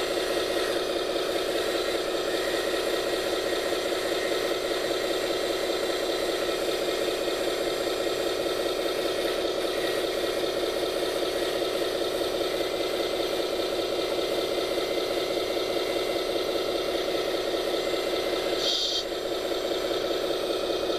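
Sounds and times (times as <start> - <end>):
toy machine motor running: 8.1 - 19.2.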